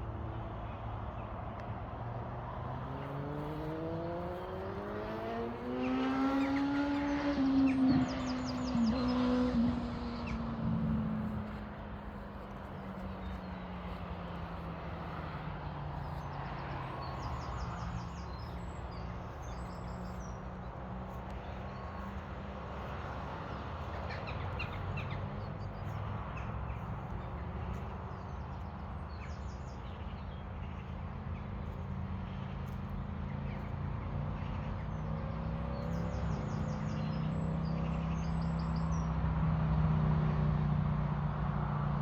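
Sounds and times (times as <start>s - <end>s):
low engine drone: 7.6s - 27.7s.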